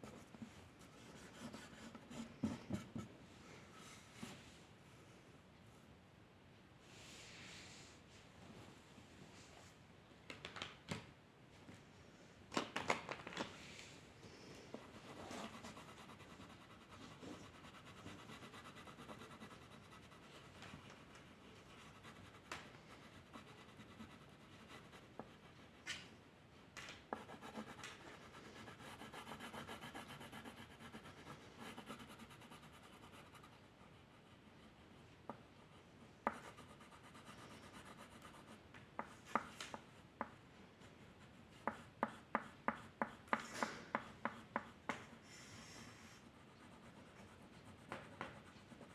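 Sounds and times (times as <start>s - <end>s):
drawing tool scratching on paper: 14.8s - 25.4s, 27.2s - 33.6s.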